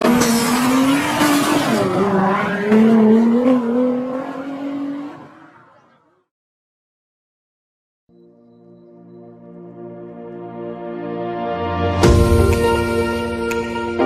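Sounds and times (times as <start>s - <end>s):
tyre and road noise: 0.0s - 6.3s.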